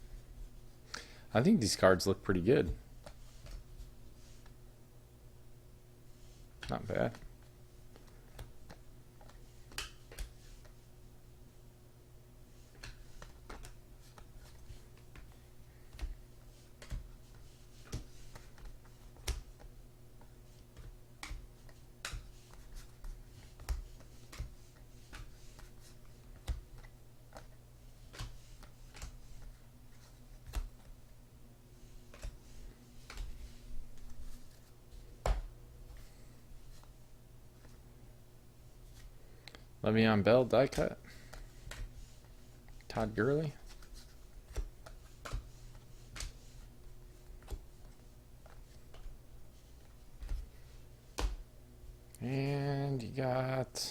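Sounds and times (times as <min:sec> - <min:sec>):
low electrical hum: 0:00.0 - 0:53.9
cards clicking and tapping on table: 0:20.8 - 0:21.4, 0:26.4 - 0:27.5.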